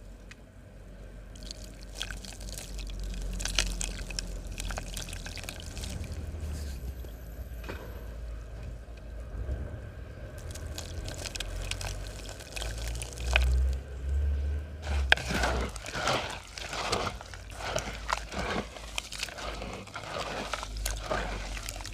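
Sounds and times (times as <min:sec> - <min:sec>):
cement crackling in water: 0:01.3 - 0:06.9, 0:10.4 - 0:13.9, 0:14.8 - 0:21.9
fizzing: 0:01.4 - 0:06.5, 0:10.4 - 0:13.8, 0:14.8 - 0:21.9.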